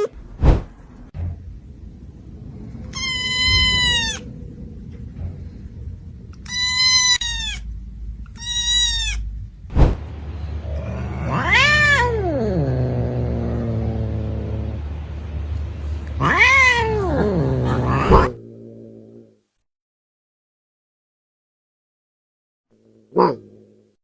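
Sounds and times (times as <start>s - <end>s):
cat meowing: 3.0s - 4.2s, 10.0s - 18.4s.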